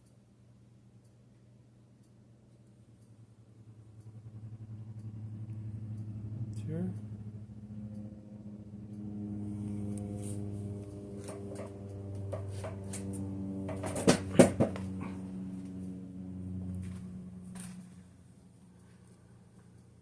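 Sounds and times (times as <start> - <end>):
steady low hum: 0.0 - 20.0
sharp clicks and knocks: 11.2 - 14.9.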